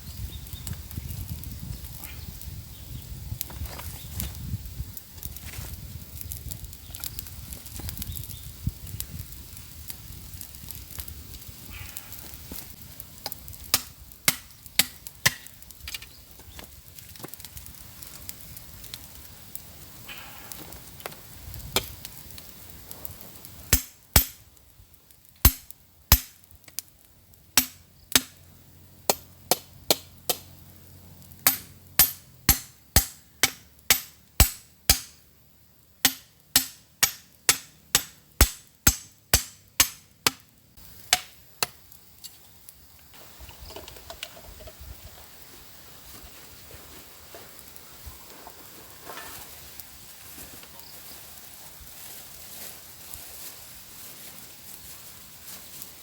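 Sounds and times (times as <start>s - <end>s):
blade chopping wood: 13.7s - 16.0s, 23.7s - 24.4s, 25.4s - 26.4s, 27.6s - 28.4s, 29.1s - 30.5s, 31.4s - 35.2s, 36.0s - 40.4s.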